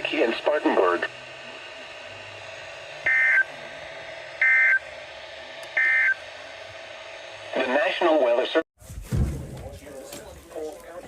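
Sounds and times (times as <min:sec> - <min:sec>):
buzzy two-tone digital data bursts: 0:03.0 - 0:03.5.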